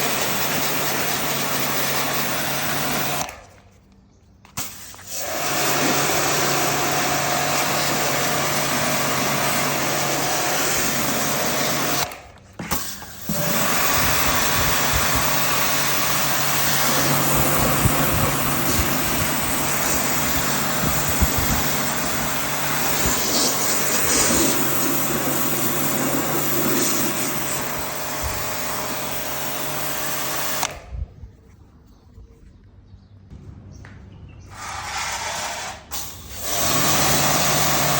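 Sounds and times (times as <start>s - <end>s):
pressure washer motor humming: 0.0s - 3.6s, 4.6s - 30.9s, 35.6s - 37.9s
water jet hissing: 12.7s - 30.7s.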